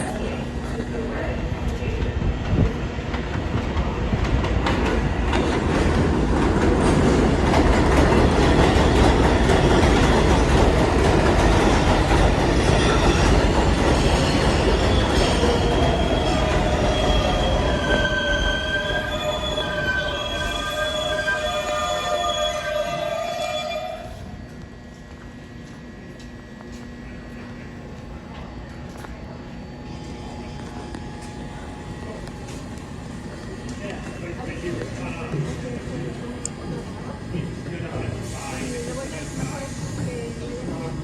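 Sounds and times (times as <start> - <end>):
subway train wheels rumbling: 0.0 - 41.0
train wheels squealing: 12.3 - 24.2.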